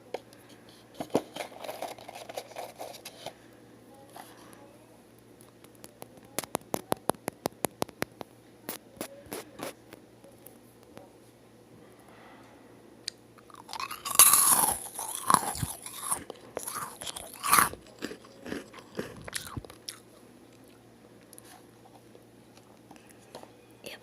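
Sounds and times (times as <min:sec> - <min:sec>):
crunching of crisp cookie: 0:13.1 - 0:23.2.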